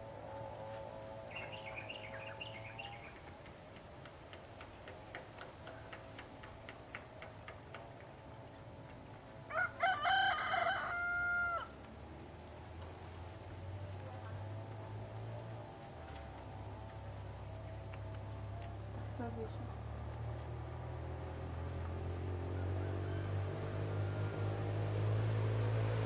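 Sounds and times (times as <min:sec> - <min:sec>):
rooster crowing: 0:09.5 - 0:11.8, 0:22.2 - 0:24.8.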